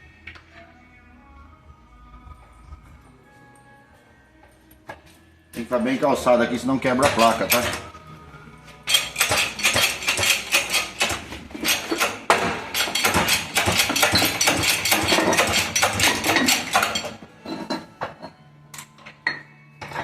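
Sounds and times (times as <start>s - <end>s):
metal parts clattering: 7.0s - 7.9s, 8.9s - 18.2s.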